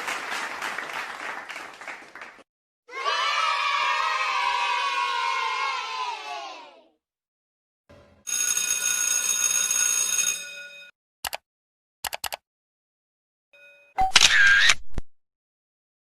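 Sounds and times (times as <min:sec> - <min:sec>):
crowd cheering: 0:00.0 - 0:06.9
telephone bell ringing: 0:08.2 - 0:10.9, 0:13.6 - 0:14.0.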